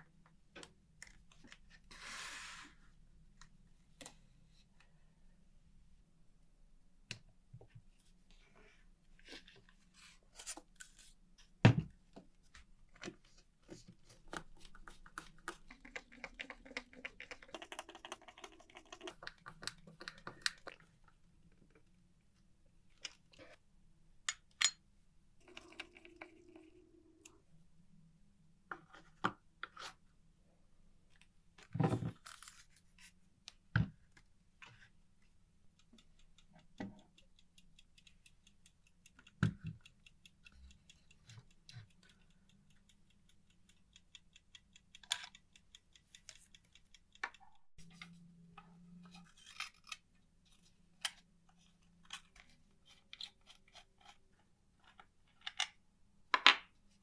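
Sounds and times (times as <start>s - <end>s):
fast even ticking: 35.8s - 47.5s.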